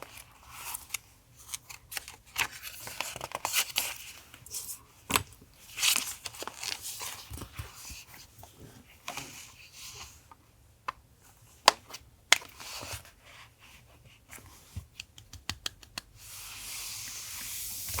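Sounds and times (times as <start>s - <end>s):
clicks and taps on a desk: 14.9s - 16.1s.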